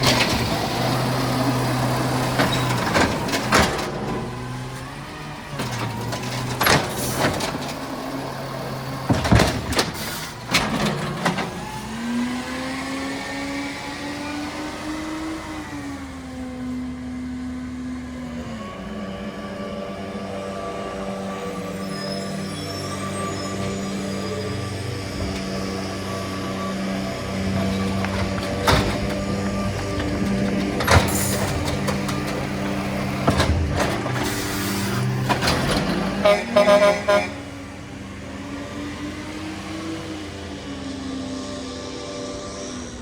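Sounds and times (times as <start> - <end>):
refuse truck engine running: 0.0 - 43.0
clanks and bangs: 5.6 - 11.8, 24.6 - 36.6.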